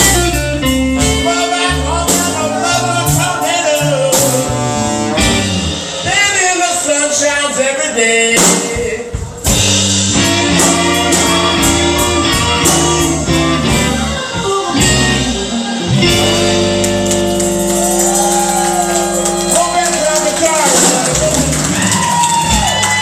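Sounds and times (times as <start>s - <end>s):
electric blues band playing: 0.0s - 23.0s.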